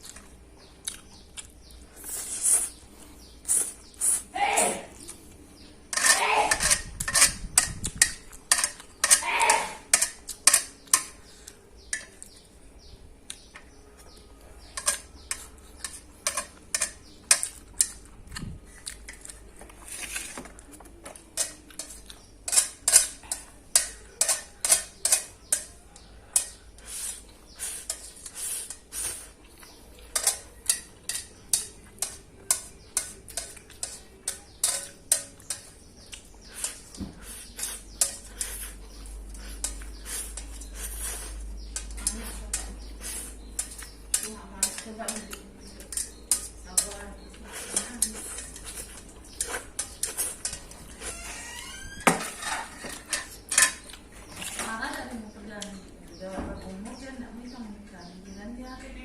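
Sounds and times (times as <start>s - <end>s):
person chewing noodles: 0.0s - 4.3s, 17.2s - 22.4s, 33.1s - 34.2s, 34.8s - 44.2s, 47.3s - 51.4s, 53.0s - 54.6s.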